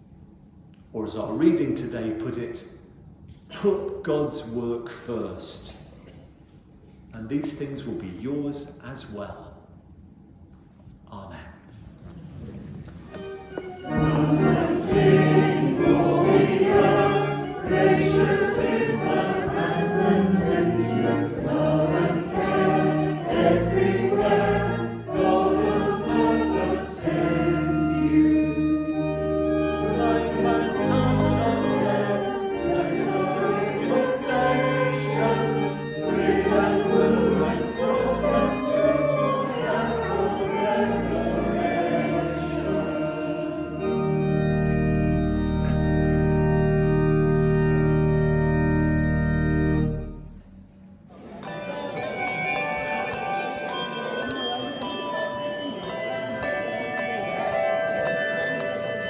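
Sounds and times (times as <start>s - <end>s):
church choir singing: 13.1s - 50.5s, 51.3s - 59.0s.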